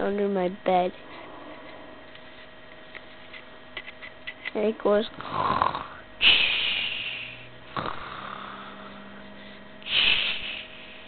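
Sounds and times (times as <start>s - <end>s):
person imitating snoring: 5.2s - 9.0s.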